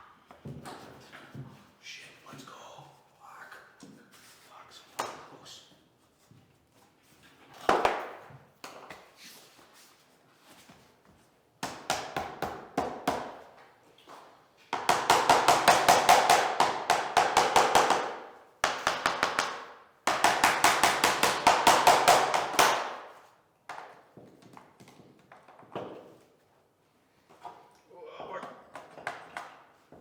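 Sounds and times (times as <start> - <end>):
mallet tapping flooring planks: 14.7 - 26.2, 28.2 - 30.0.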